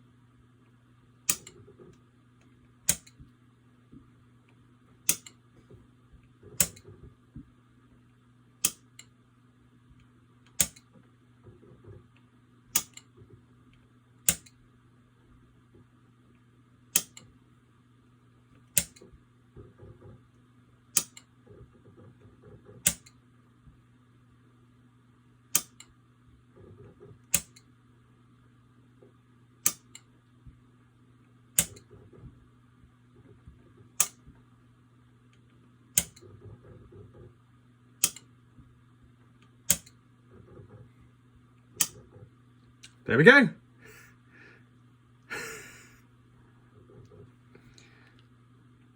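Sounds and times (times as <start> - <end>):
steady low hum: 0.0 - 48.9
toggle switch clicks: 1.3 - 1.6, 2.9 - 3.2, 5.1 - 5.4, 6.6 - 6.8, 8.6 - 9.1, 10.5 - 10.9, 12.7 - 13.1, 14.3 - 14.6, 16.9 - 17.3, 18.7 - 19.0, 21.0 - 21.3, 22.8 - 23.2, 25.5 - 25.9, 27.3 - 27.6, 29.6 - 30.1, 31.6 - 31.9, 34.0 - 34.2, 36.0 - 36.2, 38.0 - 38.3, 39.7 - 40.0, 41.8 - 42.0.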